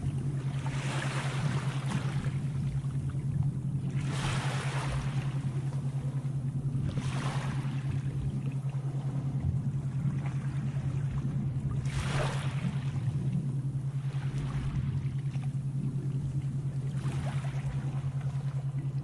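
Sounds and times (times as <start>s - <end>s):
low droning hum: 0.0s - 19.0s
sea waves washing in: 3.8s - 19.0s.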